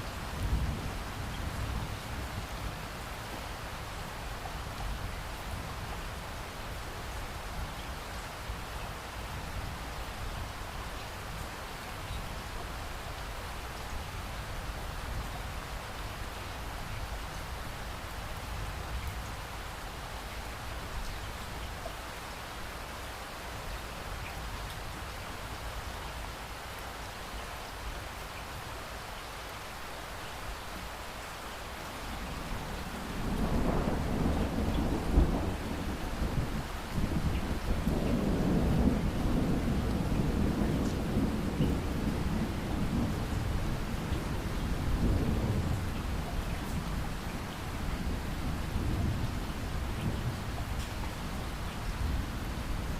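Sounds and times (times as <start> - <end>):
steady rain: 0.0 - 52.9
rolling thunder: 32.6 - 47.0.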